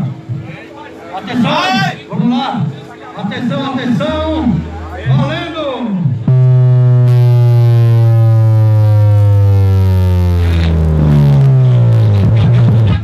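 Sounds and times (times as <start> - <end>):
low electronic tone sliding down: 3.8 - 13.0.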